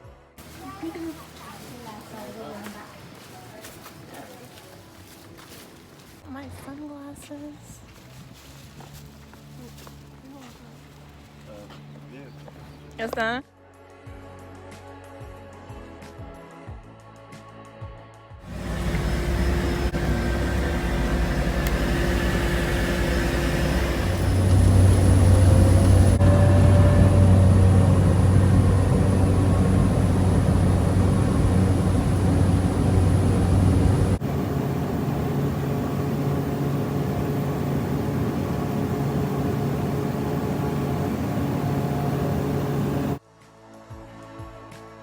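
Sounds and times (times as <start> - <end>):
propeller aircraft engines droning: 18.5 - 43.2.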